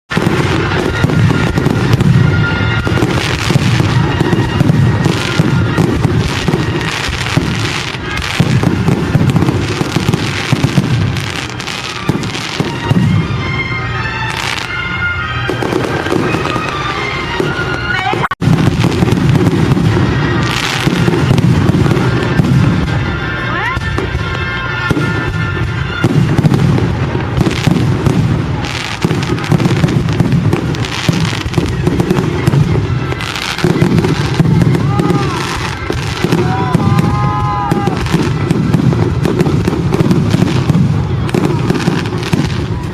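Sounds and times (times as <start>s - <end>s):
fireworks bangs and crackling: 0.1s - 42.9s.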